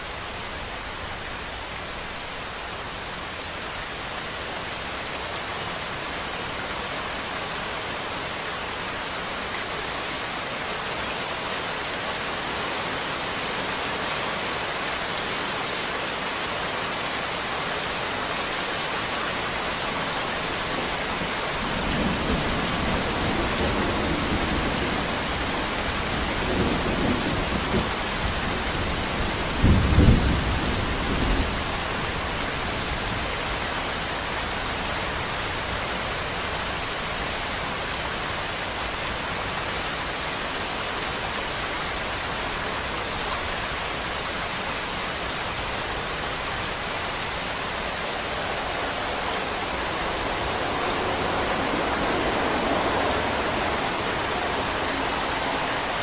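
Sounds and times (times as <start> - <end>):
steady rainfall: 0.0 - 56.0
low rumble of thunder: 21.2 - 33.3, 46.4 - 56.0.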